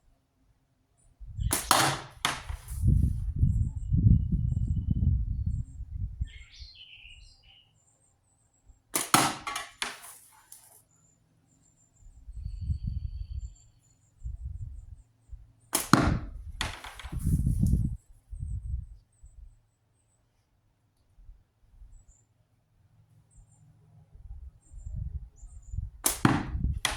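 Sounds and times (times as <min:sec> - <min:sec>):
slingshot snap and whoosh: 0:01.5 - 0:03.2, 0:09.0 - 0:10.7, 0:15.8 - 0:17.8, 0:26.0 - 0:26.9.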